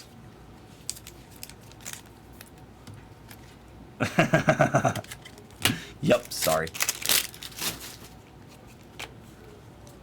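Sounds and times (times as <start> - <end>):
trading cards crackling: 0.8 - 2.5, 5.0 - 8.2.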